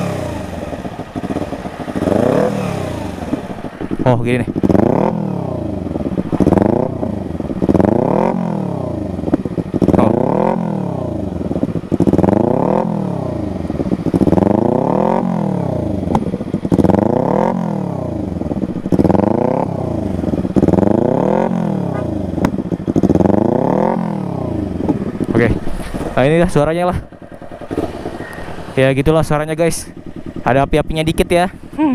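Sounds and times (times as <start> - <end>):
motorcycle engine revving: 0.0 - 31.9.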